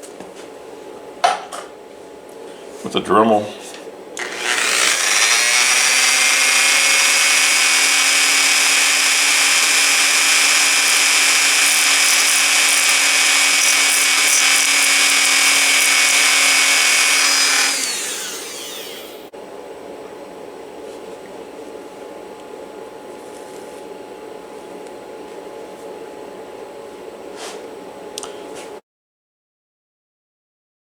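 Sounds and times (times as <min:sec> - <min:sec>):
rotary tool grinding whine: 0:04.2 - 0:19.3.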